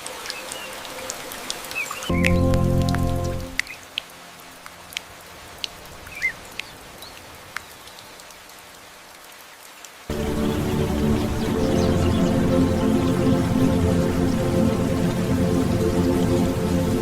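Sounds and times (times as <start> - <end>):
light rain hissing: 0.0 - 17.0
rain drips: 0.0 - 17.0
background music: 2.1 - 5.0, 10.1 - 17.0
bird chirp: 10.1 - 13.4.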